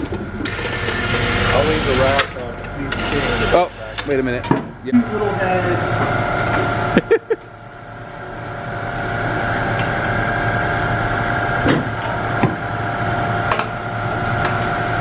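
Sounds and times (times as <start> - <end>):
steady mechanical hum: 0.0 - 15.0.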